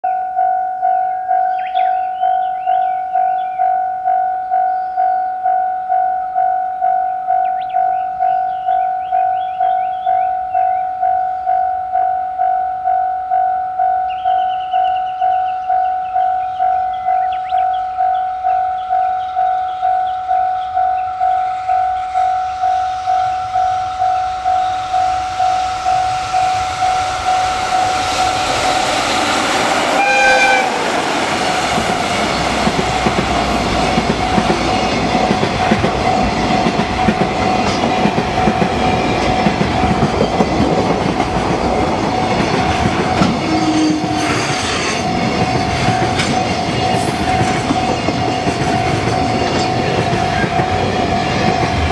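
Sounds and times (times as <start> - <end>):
level-crossing warning bell ringing: 0.0 - 51.9
freight train rumble and wheel clatter: 14.1 - 51.9
locomotive horn blast: 21.4 - 33.0, 43.2 - 45.2.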